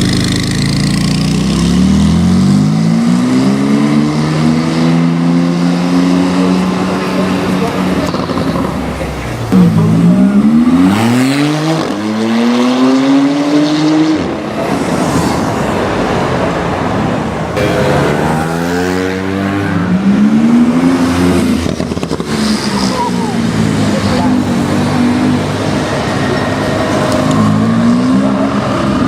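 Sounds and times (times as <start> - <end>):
road noise: 0.0 - 29.0
sports car accelerating hard: 1.2 - 16.2.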